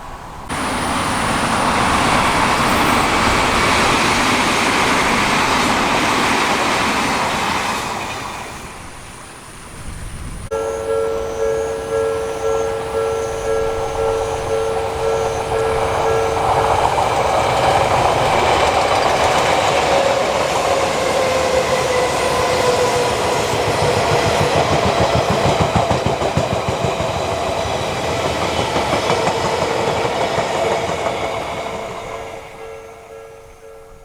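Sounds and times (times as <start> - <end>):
electric train passing: 0.0 - 34.0
crossing warning bell: 10.5 - 34.0
wheel clatter over rails: 11.7 - 32.6.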